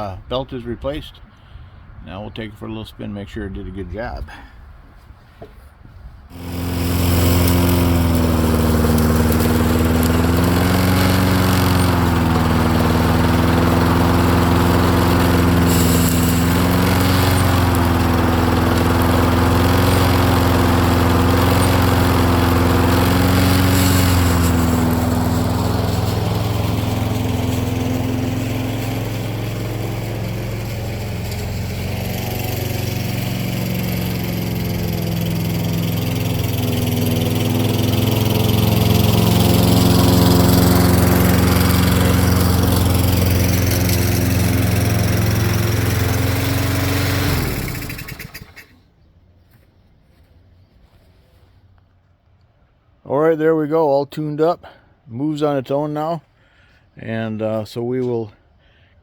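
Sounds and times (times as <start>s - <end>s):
lawn mower engine running: 6.3s - 48.8s.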